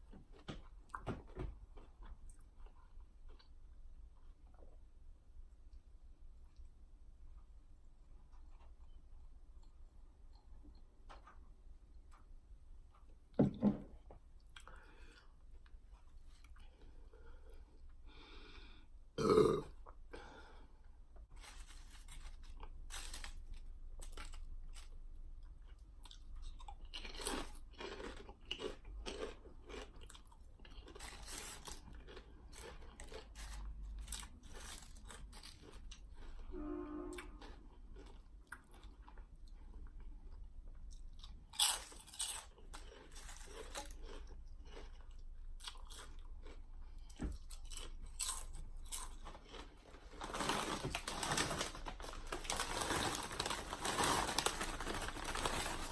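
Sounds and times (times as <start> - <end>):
crunching and chewing chips: 1.6 - 4.9, 14.4 - 18.0, 21.3 - 36.5, 37.2 - 55.9.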